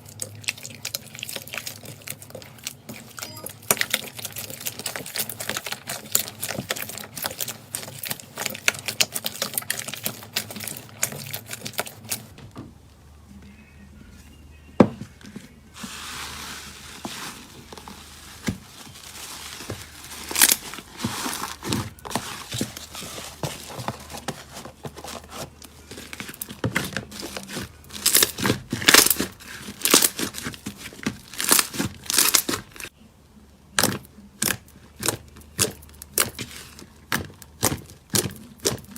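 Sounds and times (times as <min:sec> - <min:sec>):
slime crackling and popping: 0:18.4 - 0:22.8, 0:25.9 - 0:32.9.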